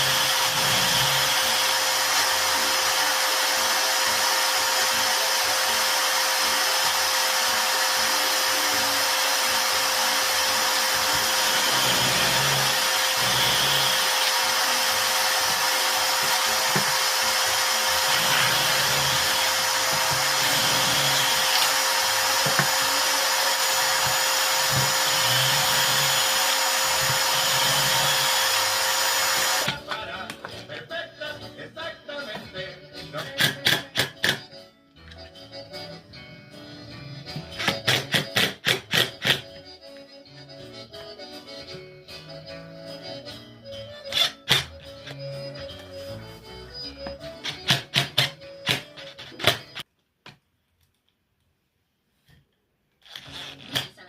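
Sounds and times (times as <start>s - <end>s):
electric power tool whining: 0.0s - 29.8s.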